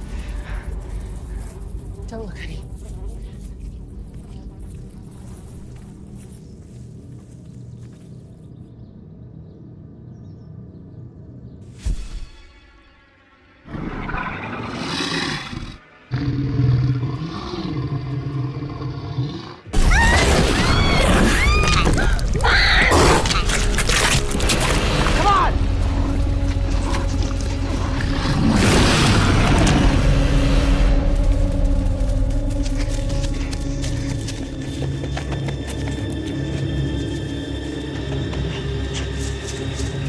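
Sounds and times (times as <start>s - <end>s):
horror film score drones: 19.3s - 40.0s.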